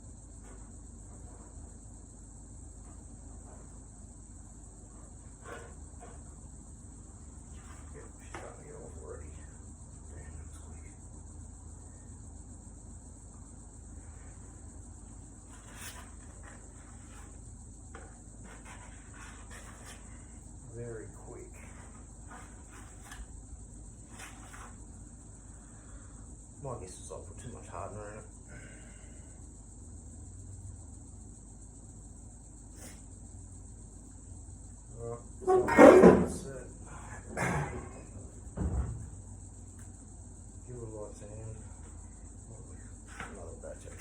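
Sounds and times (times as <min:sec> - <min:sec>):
insect chirring: 0:00.0 - 0:44.0
short scrapes: 0:05.3 - 0:06.3, 0:15.4 - 0:17.4, 0:18.4 - 0:20.4, 0:21.6 - 0:23.3, 0:24.0 - 0:24.9
insect trilling: 0:32.6 - 0:44.0.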